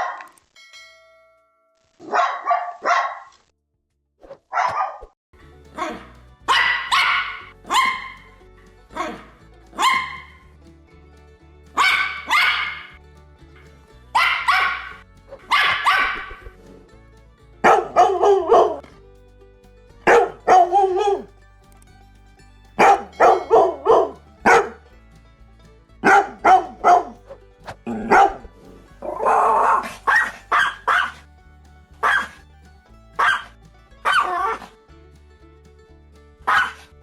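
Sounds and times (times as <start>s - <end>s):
dog barking: 0.0s - 0.3s, 2.0s - 3.3s, 4.5s - 5.2s, 5.8s - 8.2s, 9.0s - 10.4s, 11.8s - 12.9s, 14.2s - 16.5s, 17.6s - 18.8s, 20.1s - 21.3s, 22.8s - 24.8s, 26.0s - 27.2s, 27.9s - 31.2s, 32.0s - 32.4s, 33.2s - 34.7s, 36.4s - 36.9s
quiet background music: 5.4s - 37.0s.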